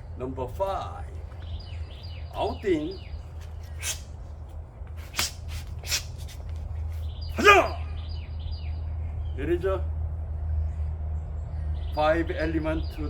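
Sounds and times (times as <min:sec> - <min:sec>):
birds chirping faintly: 0:00.0 - 0:13.0
person shouting: 0:07.4 - 0:08.0.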